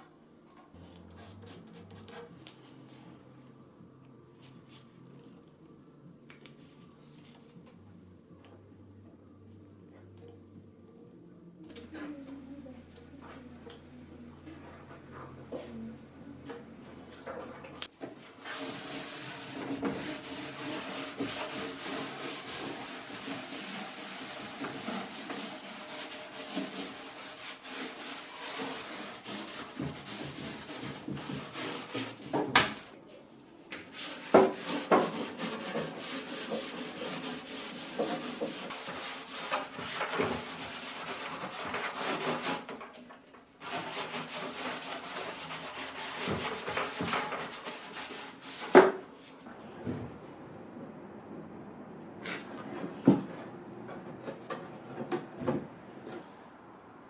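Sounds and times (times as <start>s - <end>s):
sanding wood: 18.3s - 32.3s, 33.9s - 42.8s, 43.6s - 49.0s.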